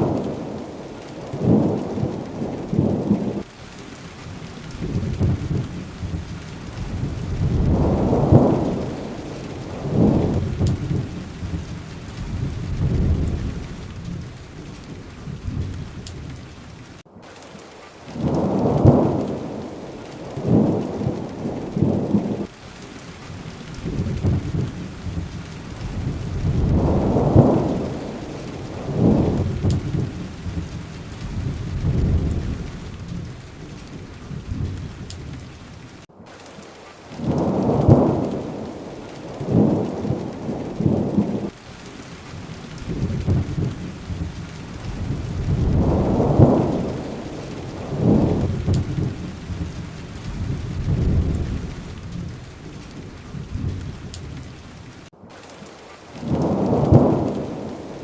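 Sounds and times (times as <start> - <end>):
rolling thunder: 0.0 - 3.5, 4.3 - 17.0, 18.1 - 36.1, 37.2 - 41.6, 42.3 - 55.1, 56.2 - 58.0
heavy rain hissing: 0.0 - 58.0.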